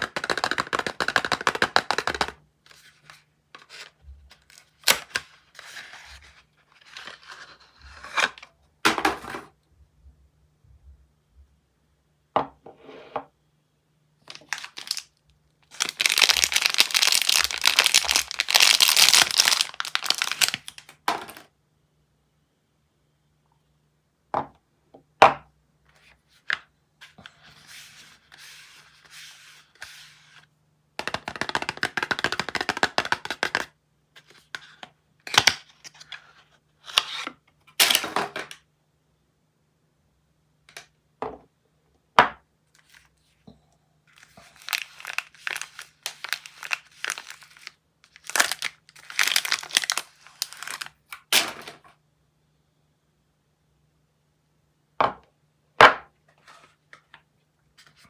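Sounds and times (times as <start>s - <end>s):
wrappers crinkling and tearing: 14.3s - 21.0s, 44.1s - 51.4s.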